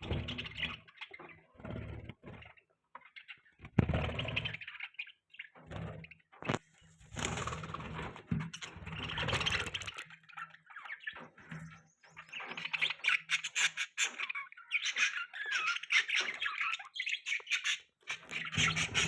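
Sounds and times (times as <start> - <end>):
budgerigars chirping: 9.0 - 19.0.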